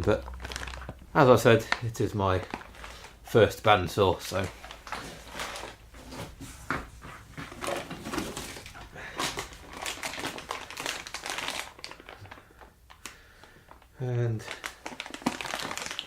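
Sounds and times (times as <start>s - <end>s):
packaging crinkling and rustling: 0.1s - 16.0s.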